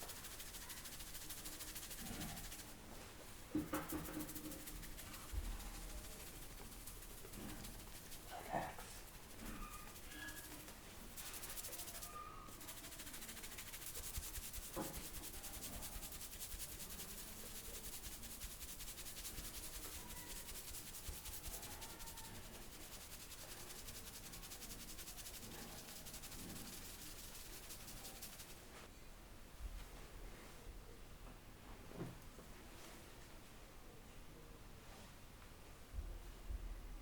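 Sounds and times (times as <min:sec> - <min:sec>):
hands rubbing hair and scalp: 0:00.0 - 0:28.8.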